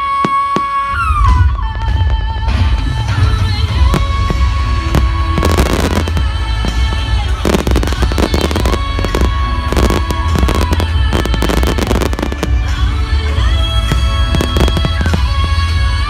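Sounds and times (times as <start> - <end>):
fireworks bangs and crackles: 0.0 - 16.0
loud music with heavy bass: 1.0 - 16.0.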